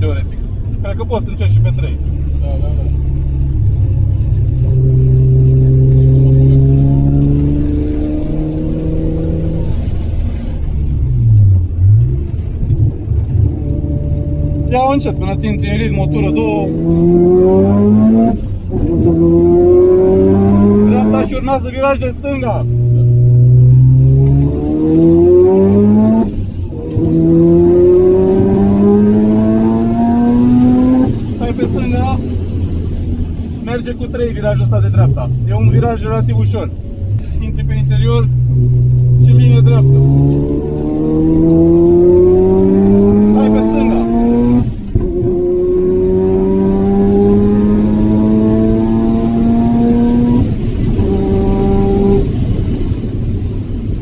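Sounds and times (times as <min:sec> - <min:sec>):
rotary engine revving under load: 0:11.7 - 0:21.5, 0:22.6 - 0:33.6, 0:37.2 - 0:53.6.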